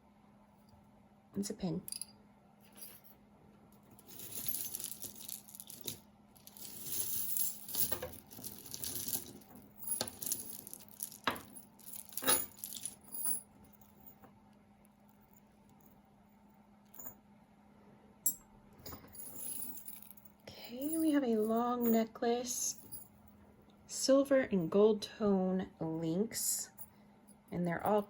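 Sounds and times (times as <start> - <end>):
jewelry clinking and jingling: 3.8 - 14.3, 18.3 - 23.4.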